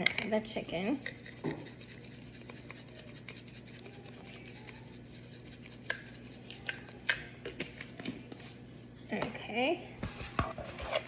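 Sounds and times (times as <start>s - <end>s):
salt shaker rasping shakes: 0.5s - 7.2s.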